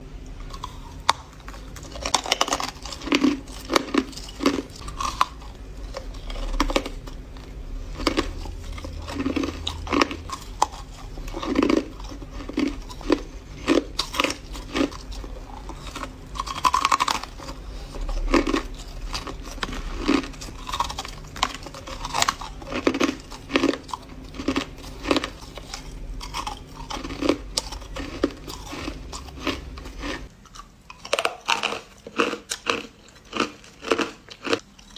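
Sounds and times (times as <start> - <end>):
crunching ice with teeth: 0.5 - 34.9.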